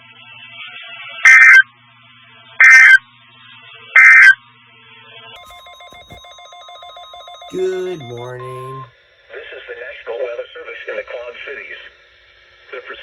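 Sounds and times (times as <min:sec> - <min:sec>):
faint steady tone: 0:05.4 - 0:08.9.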